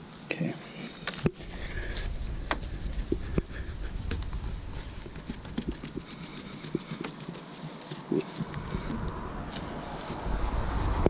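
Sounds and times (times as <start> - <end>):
wind rumble on microphone: 1.3 - 7.2, 8.4 - 11.0.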